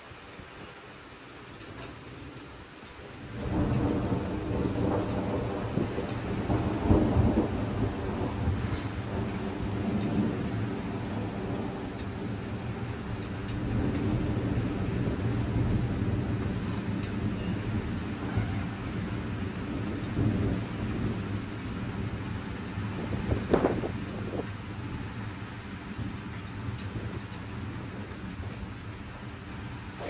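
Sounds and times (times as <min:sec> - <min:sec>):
steady rain: 0:00.0 - 0:30.0
rolling thunder: 0:03.2 - 0:25.2.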